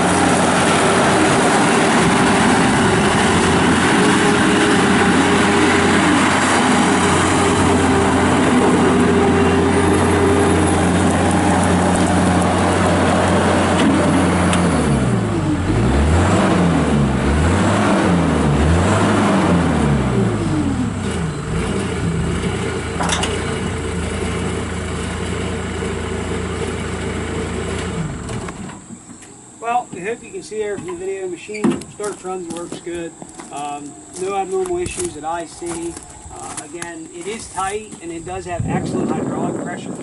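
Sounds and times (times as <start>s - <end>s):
loader diesel engine running: 0.0s - 28.9s.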